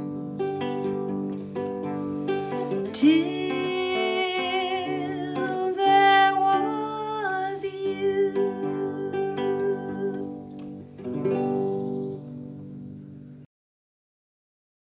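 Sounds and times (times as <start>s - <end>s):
acoustic guitar: 0.0s - 13.4s
person singing long vibrato note: 2.9s - 10.5s.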